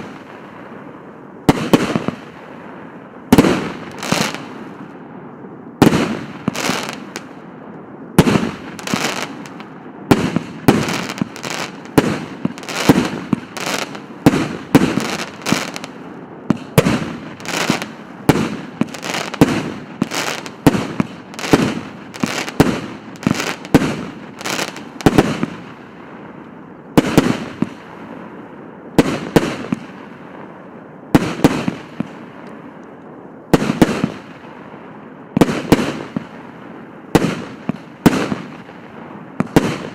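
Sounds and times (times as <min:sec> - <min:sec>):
fireworks bangs: 0:00.0 - 0:05.2, 0:05.8 - 0:32.3, 0:33.5 - 0:39.9
fireworks crackling: 0:00.0 - 0:05.2, 0:05.8 - 0:39.9.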